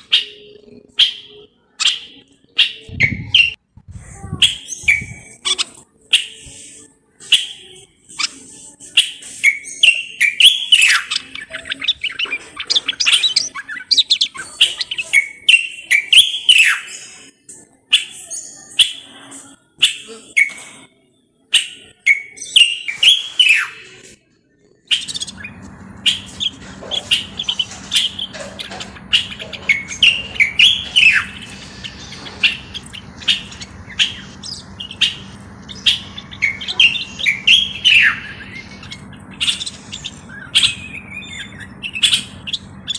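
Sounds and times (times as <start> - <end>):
bird singing whistled chirps: 4.5 - 5.4, 24.9 - 42.9
steady low hum: 25.0 - 42.9.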